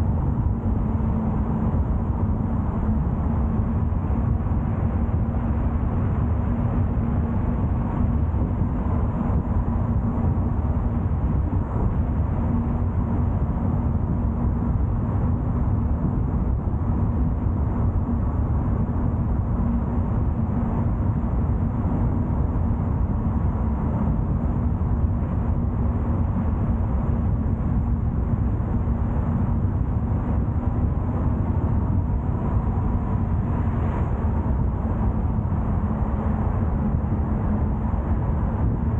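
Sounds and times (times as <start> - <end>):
road and tyre noise: 0.0 - 38.9
car engine hum: 19.5 - 38.8.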